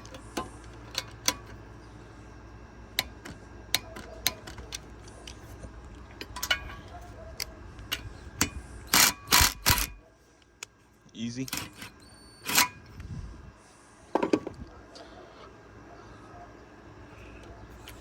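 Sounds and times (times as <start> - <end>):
tools clicking and knocking: 0.0 - 1.6, 3.0 - 10.0.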